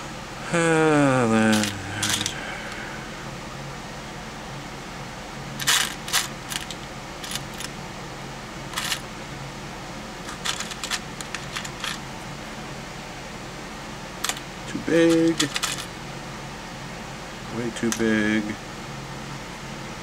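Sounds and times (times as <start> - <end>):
small metal parts clinking: 1.5 - 2.4, 5.6 - 7.7, 8.7 - 9.0, 10.2 - 12.0, 14.2 - 14.4, 15.0 - 15.9.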